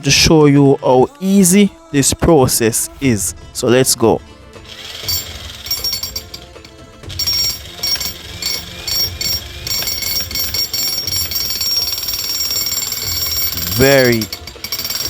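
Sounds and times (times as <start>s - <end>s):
electric jackhammer hammering: 4.7s - 15.0s.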